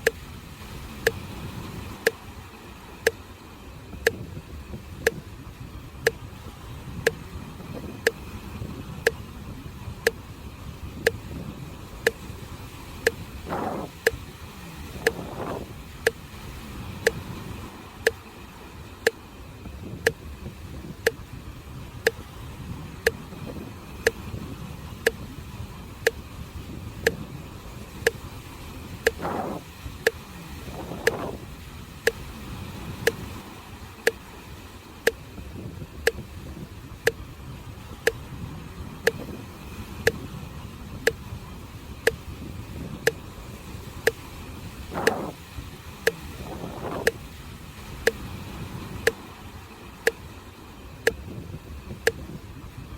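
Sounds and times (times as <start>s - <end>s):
waves washing on shore: 0.0s - 52.9s
metronome ticking: 4.0s - 4.2s, 5.0s - 5.2s, 13.0s - 14.2s, 15.0s - 15.3s, 24.0s - 24.2s, 28.0s - 28.2s, 29.0s - 30.2s, 31.0s - 31.2s, 39.0s - 39.2s, 45.0s - 45.3s, 46.0s - 46.4s.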